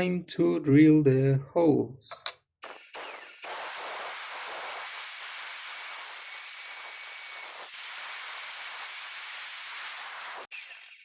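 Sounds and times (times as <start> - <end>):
electric drill boring: 2.6 - 11.0.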